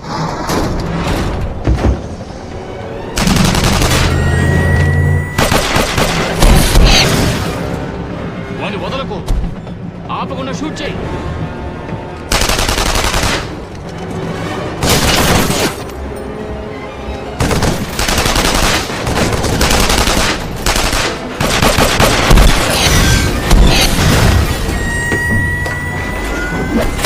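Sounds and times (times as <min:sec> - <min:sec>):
orchestral score: 0:00.0 - 0:27.0
rapid gunfire: 0:03.2 - 0:04.1, 0:05.4 - 0:07.0, 0:12.3 - 0:13.6, 0:17.4 - 0:22.9.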